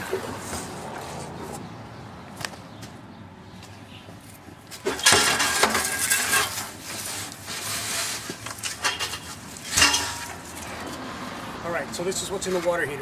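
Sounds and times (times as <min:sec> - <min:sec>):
metal parts scraping and rattling: 0:04.8 - 0:11.0.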